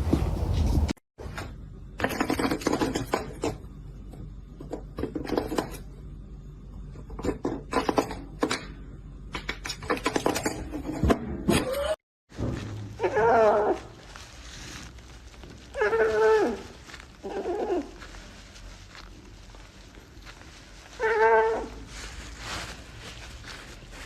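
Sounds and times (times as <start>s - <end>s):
low steady hum: 3.5s - 9.6s, 12.3s - 24.0s.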